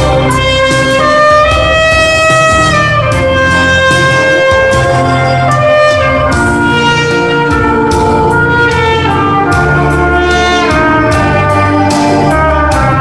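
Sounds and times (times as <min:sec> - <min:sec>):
backing track with bass line: 0:00.0 - 0:13.0
trumpet slow melody: 0:00.0 - 0:13.0.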